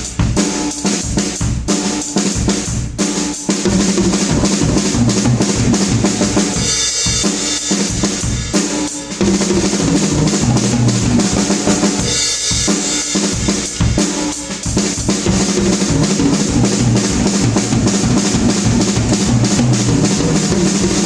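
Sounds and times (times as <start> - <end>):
drum kit playing a busy beat: 0.0 - 21.0
low bass notes: 4.3 - 6.6, 9.8 - 12.0, 15.8 - 21.0.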